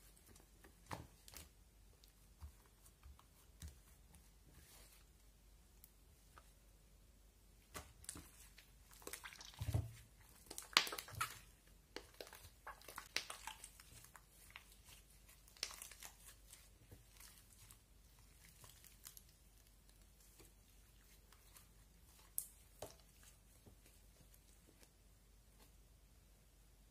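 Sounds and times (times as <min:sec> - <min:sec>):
slime squished by hand: 0:07.7 - 0:24.8.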